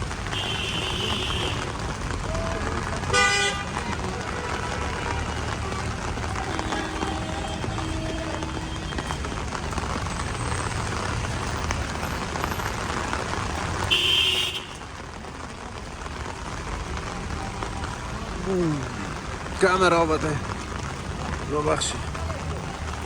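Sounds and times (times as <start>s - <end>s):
engines rumbling: 0.0s - 23.0s
heavy rain hiss: 0.0s - 23.0s
tyres on wet road: 0.0s - 23.0s
car horn beep: 0.3s - 1.6s, 13.9s - 14.8s.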